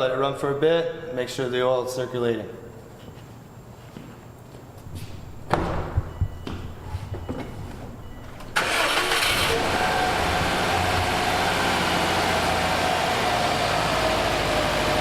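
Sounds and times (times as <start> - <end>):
car engine starting and idling: 7.9 - 15.0.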